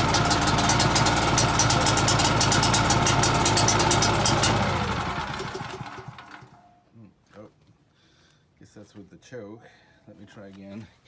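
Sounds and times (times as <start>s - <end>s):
generator engine dying: 0.0s - 6.6s.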